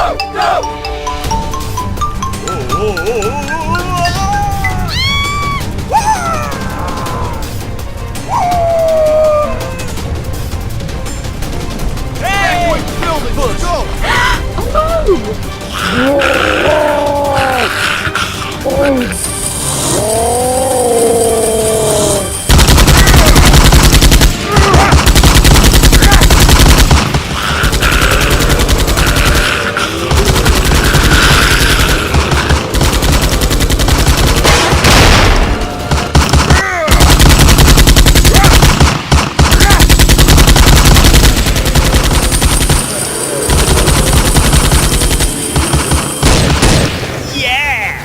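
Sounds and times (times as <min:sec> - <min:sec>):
rapid automatic gunfire: 0:22.5 - 0:46.9.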